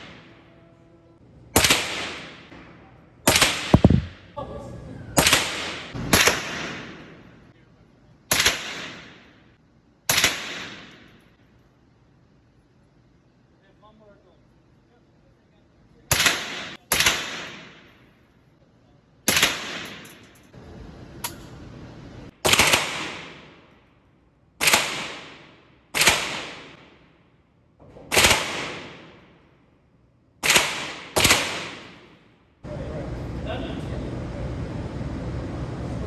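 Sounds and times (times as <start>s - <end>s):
gunshots with echoing tail: 1.6s - 4.3s, 5.2s - 7.3s, 8.3s - 9.5s, 10.1s - 11.2s, 16.1s - 18.0s, 19.3s - 20.2s, 22.4s - 23.7s, 24.6s - 27.2s, 28.1s - 29.4s, 30.4s - 32.3s.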